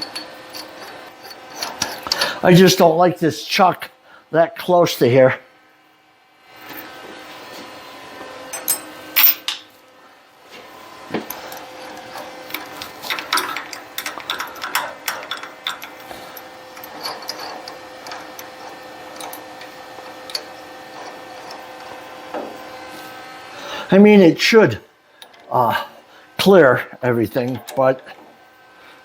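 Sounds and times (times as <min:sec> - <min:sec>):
metal drill bits clinking: 0:08.6 - 0:09.6.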